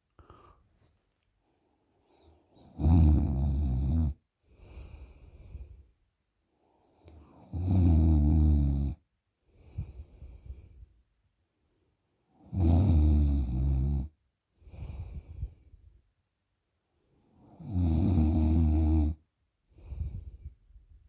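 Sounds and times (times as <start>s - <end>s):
person snoring heavily: 2.8s - 5.6s, 17.6s - 19.2s.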